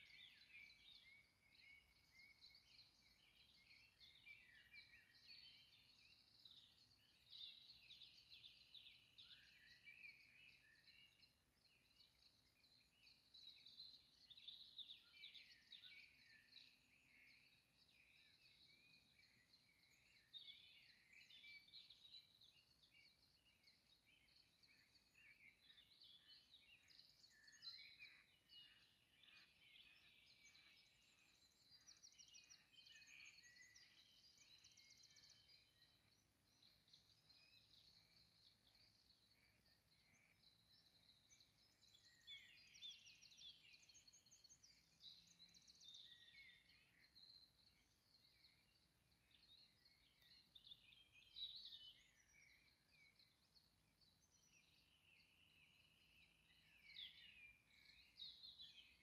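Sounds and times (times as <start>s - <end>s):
songbirds chirping and trilling: 0.0s - 59.0s.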